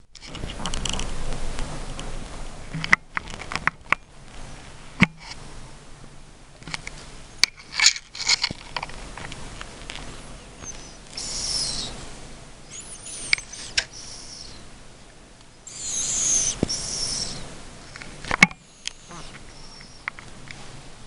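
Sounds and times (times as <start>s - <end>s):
cat snoring: 15.7s - 17.4s.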